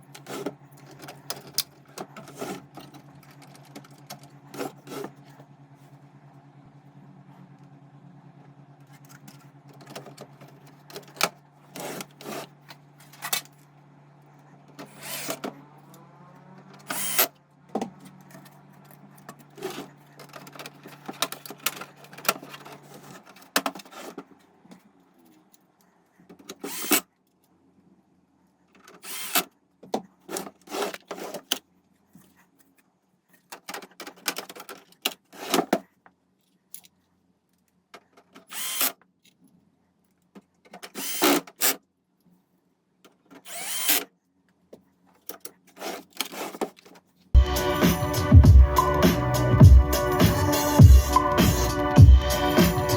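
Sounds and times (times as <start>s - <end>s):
small parts and tools clicking: 0.1s - 5.2s, 16.6s - 27.6s, 28.7s - 42.4s, 43.0s - 47.3s.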